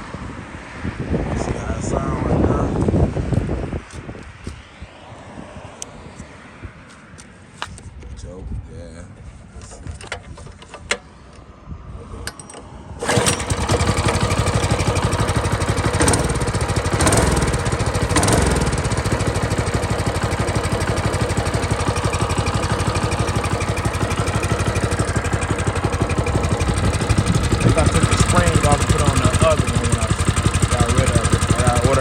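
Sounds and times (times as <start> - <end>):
small engine running and revving: 13.0 - 32.0.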